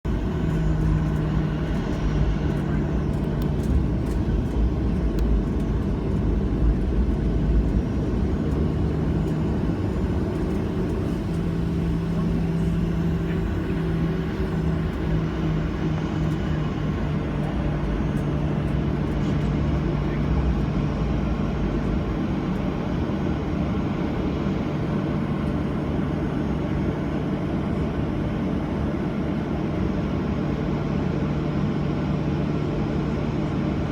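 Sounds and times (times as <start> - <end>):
airplane cabin engine drone: 0.0 - 33.9.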